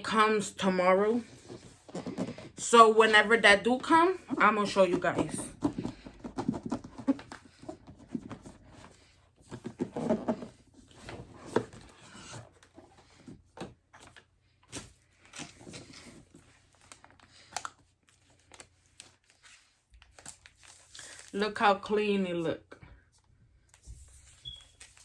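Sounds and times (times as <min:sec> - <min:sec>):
paper and plastic crinkling: 0:15.2 - 0:21.4, 0:23.7 - 0:25.0.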